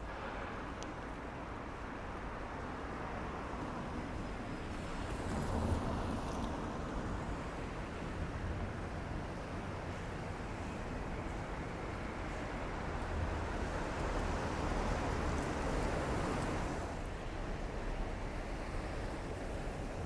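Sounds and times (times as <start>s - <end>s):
road vehicles rumbling: 7.0s - 19.0s.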